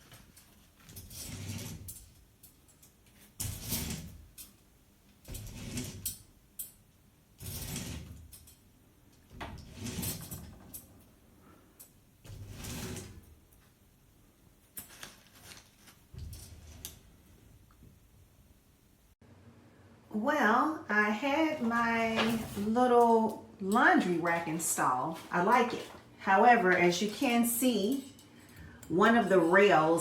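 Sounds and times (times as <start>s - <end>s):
sliding rubbing handling noises: 14.7s - 17.3s, 21.4s - 26.0s.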